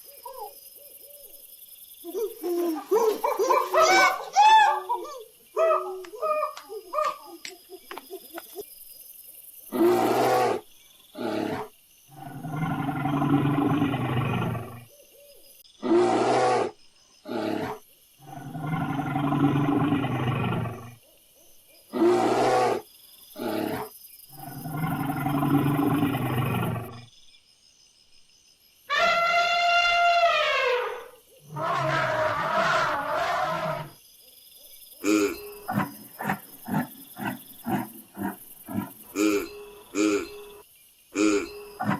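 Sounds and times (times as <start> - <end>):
animal calling: 2.0 - 8.6, 28.9 - 34.0, 35.0 - 40.6, 41.2 - 41.9.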